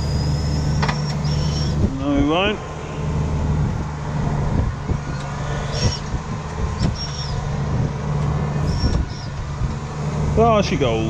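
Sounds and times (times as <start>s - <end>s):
short high squeaks: 0.0s - 1.9s, 5.1s - 6.2s, 6.8s - 7.5s, 8.6s - 9.4s
tractor diesel engine running: 0.0s - 11.0s.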